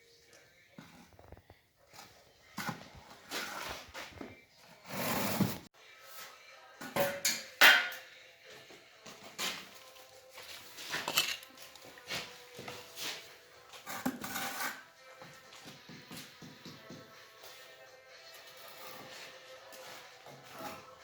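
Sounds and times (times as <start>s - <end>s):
faint music: 0.0s - 21.0s
trowel scraping bricks: 13.8s - 14.9s.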